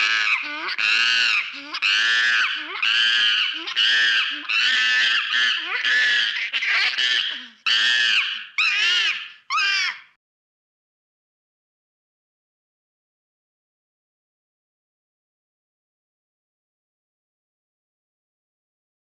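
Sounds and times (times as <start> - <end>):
monkey screeching: 0.0 - 10.1.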